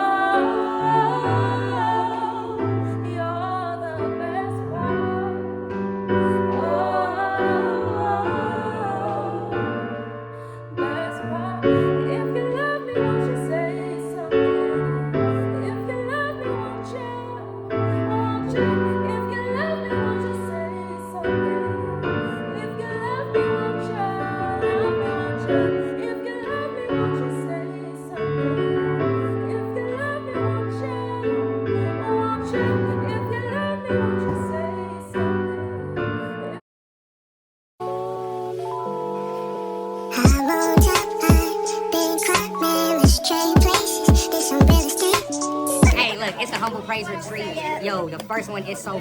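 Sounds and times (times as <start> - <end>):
person singing: 0.0 - 21.5, 37.8 - 48.0
piano chords: 0.0 - 36.6, 37.8 - 49.0.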